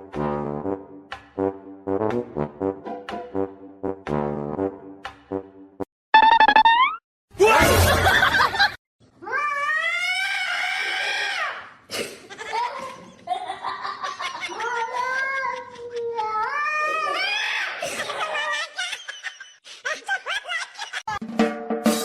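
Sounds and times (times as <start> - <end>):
cat yowling: 9.2 - 11.3.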